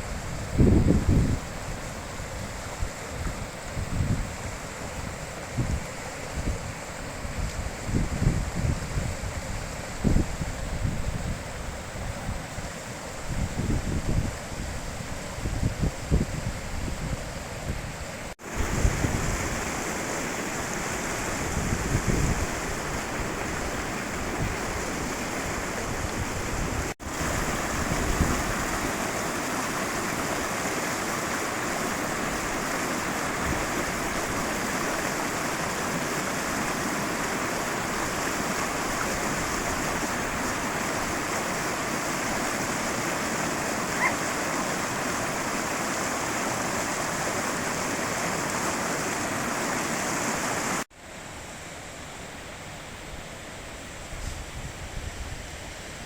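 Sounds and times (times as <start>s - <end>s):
wind rumble on microphone: 0.0s - 20.0s, 20.8s - 29.0s, 54.0s - 56.0s
river water rushing: 17.3s - 54.1s.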